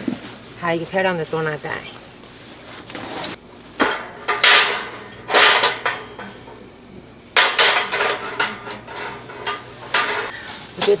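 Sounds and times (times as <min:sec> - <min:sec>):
metal parts clinking and clattering: 0:03.8 - 0:06.5, 0:07.4 - 0:11.0.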